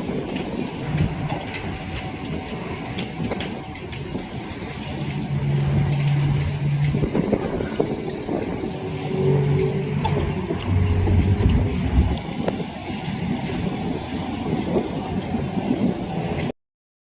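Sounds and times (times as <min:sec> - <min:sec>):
diesel engine humming: 0:00.0 - 0:16.5.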